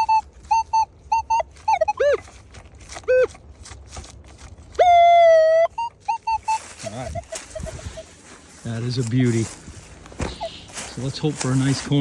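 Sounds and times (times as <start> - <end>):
metal detector beeps and chirps: 0.0 - 2.3, 4.8 - 8.2, 10.2 - 10.8.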